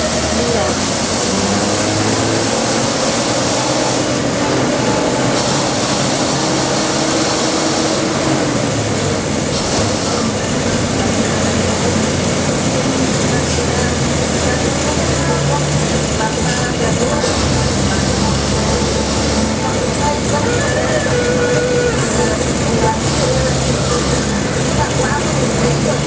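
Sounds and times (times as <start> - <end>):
bus engine drone: 0.0 - 26.0
road and rattle noise: 0.0 - 26.0.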